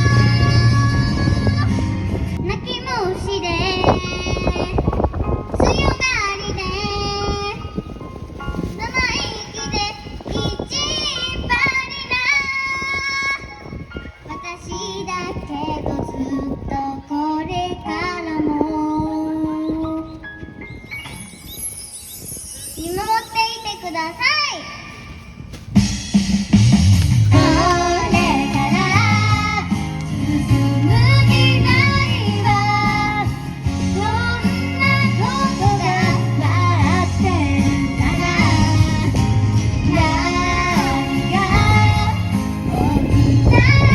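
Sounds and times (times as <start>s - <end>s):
instrumental accompaniment with bass: 0.0s - 2.6s, 25.8s - 43.9s
girl singing pop song: 0.0s - 20.6s, 22.7s - 25.2s, 27.3s - 43.9s
backing track music: 0.0s - 24.2s, 24.8s - 43.9s.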